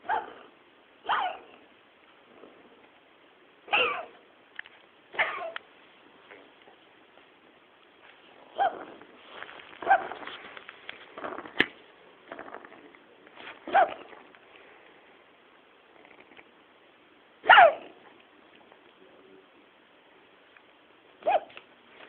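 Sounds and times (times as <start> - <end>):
cat coughing: 1.0 - 1.6, 3.7 - 4.2, 5.1 - 5.6, 17.4 - 18.0.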